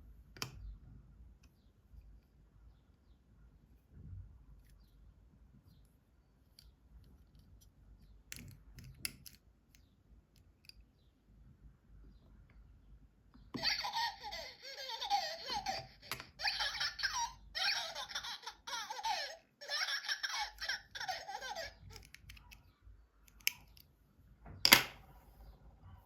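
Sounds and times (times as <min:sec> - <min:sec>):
high-pitched giggling: 0:13.6 - 0:22.1.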